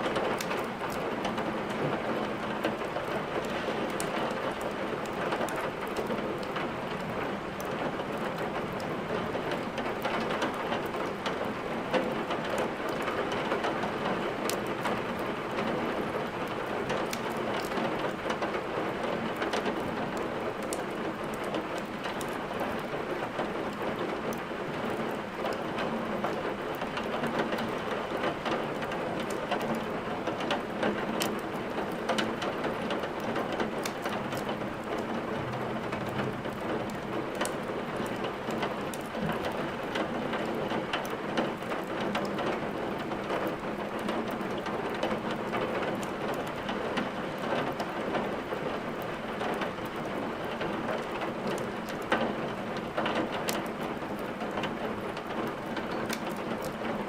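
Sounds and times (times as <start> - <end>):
rain hiss: 1.9 - 8.5
firewood crackling: 31.2 - 35.2, 36.4 - 41.8, 54.6 - 56.8.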